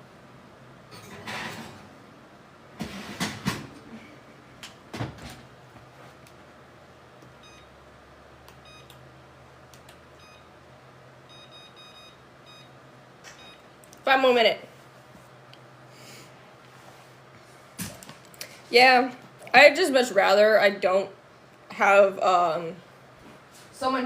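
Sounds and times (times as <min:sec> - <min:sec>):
oven control panel beeps: 0:07.4 - 0:07.8, 0:08.6 - 0:09.0, 0:10.2 - 0:10.6, 0:11.3 - 0:13.7.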